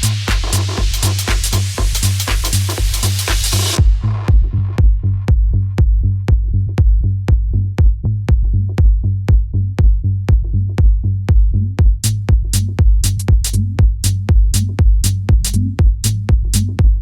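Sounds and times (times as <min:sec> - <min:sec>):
hi-hat pattern: 0:00.0 - 0:04.9, 0:11.8 - 0:17.0
deep bass line: 0:00.0 - 0:17.0
kick drum: 0:00.0 - 0:17.0.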